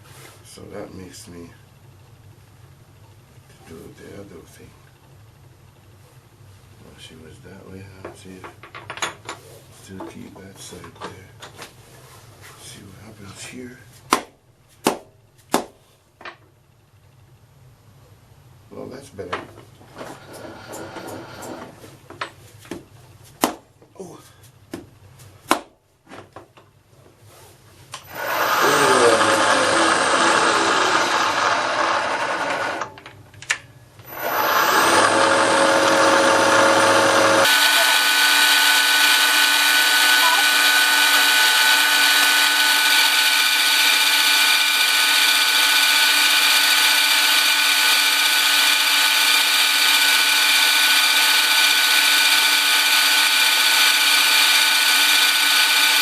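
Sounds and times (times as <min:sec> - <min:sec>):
milling machine cutting metal: 0:28.0 - 0:32.9, 0:34.0 - 0:56.0.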